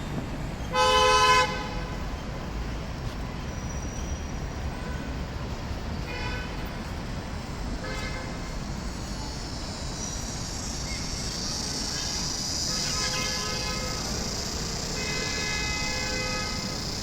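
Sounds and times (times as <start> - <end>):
street traffic rumbling: 0.0 - 17.0
high hiss: 8.4 - 17.0.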